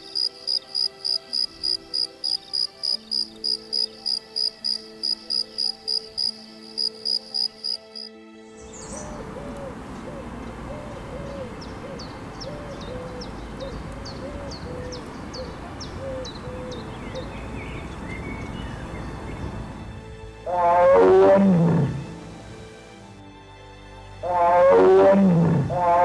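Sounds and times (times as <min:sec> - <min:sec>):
bird chirping: 0:00.0 - 0:19.9
bird hooting: 0:08.8 - 0:17.5.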